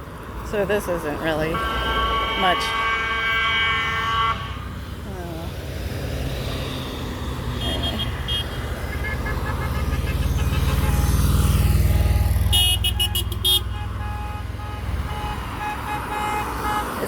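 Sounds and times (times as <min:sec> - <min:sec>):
faint honking: 0:01.4 - 0:05.6, 0:07.5 - 0:17.0
short horn beeps: 0:01.6 - 0:04.6.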